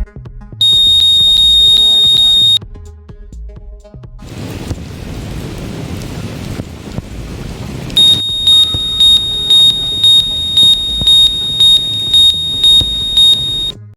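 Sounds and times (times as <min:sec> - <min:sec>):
buzzer high-pitched pulsing tone: 0:00.6 - 0:02.6, 0:08.0 - 0:13.8.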